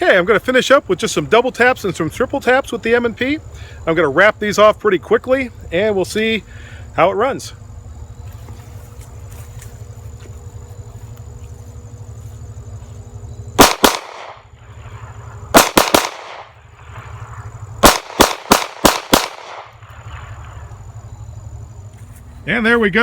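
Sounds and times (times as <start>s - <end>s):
steady low rumble: 0.0s - 23.0s
pistol shots: 13.6s - 14.5s, 15.5s - 16.6s, 17.8s - 19.8s.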